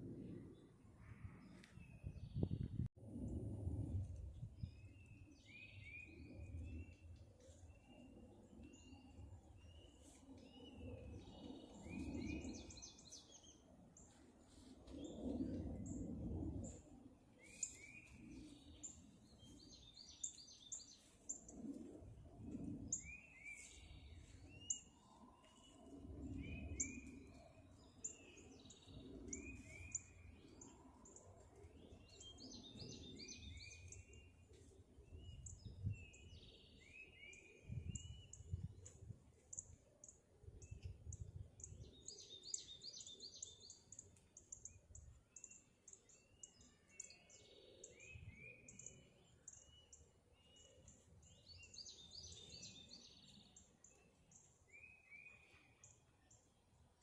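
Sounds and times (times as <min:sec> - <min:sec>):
low rumble: 0:00.0 - 0:05.2.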